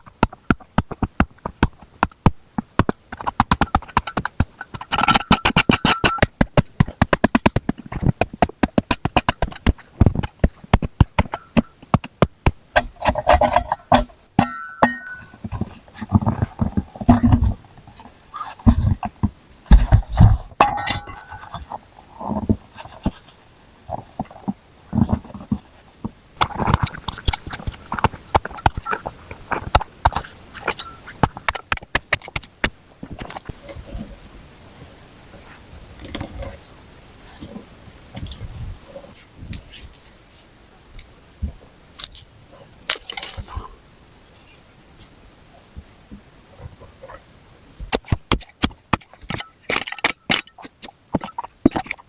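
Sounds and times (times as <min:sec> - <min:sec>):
sharp knocks clinks and scrapes: 0:03.2 - 0:06.9, 0:12.8 - 0:19.1, 0:19.7 - 0:21.8, 0:47.9 - 0:52.0.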